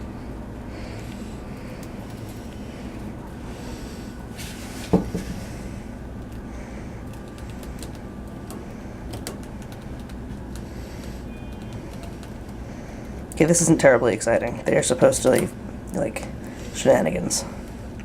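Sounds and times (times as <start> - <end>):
rats gnawing crisp cracker: 0.8 - 4.0, 5.4 - 13.7.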